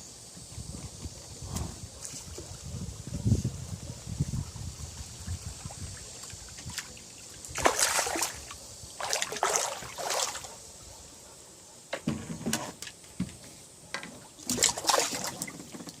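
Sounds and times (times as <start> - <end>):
fish splashing in water: 5.2 - 10.5, 14.4 - 16.0.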